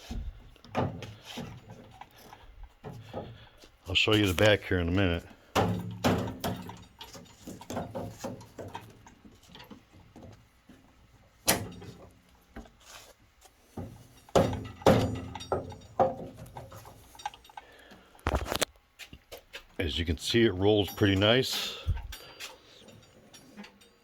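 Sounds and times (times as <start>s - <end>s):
tool cart knocks and clunks: 0.0s - 2.0s, 5.5s - 10.4s, 11.4s - 12.7s, 13.7s - 17.4s.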